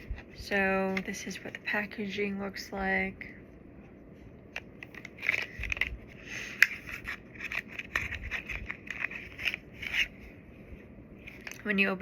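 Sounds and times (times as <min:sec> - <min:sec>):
packaging scraping and clicking: 0:04.6 - 0:10.2.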